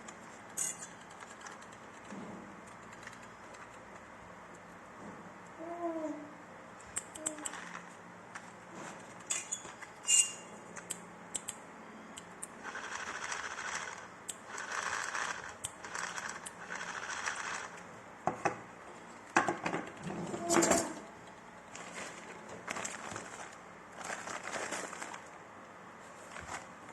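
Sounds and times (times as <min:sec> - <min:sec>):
toy car clicks and clattering: 0:00.5 - 0:03.9, 0:07.0 - 0:07.8, 0:12.4 - 0:17.8
toy car motor whirring: 0:12.6 - 0:17.8.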